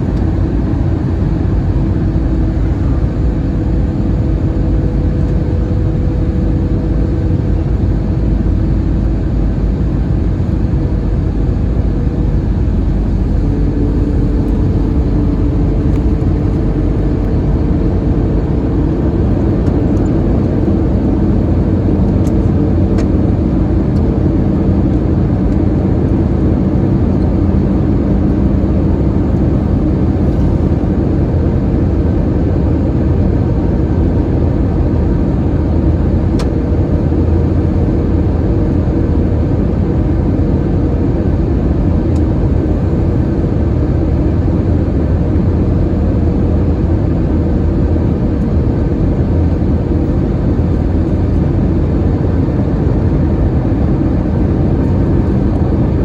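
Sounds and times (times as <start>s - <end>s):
jet engine drone in cabin: 0.0s - 56.0s
rushing airflow: 9.8s - 33.3s.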